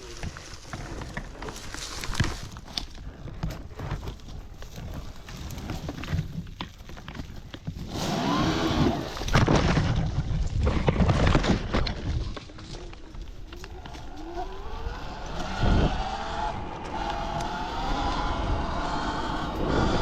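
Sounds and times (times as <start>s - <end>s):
twigs snapping under tyres: 0.0s - 8.0s, 9.0s - 18.6s
tyre and wind noise rushing: 7.7s - 12.6s, 13.2s - 20.0s
electric motor whine: 7.9s - 9.1s, 13.5s - 20.0s.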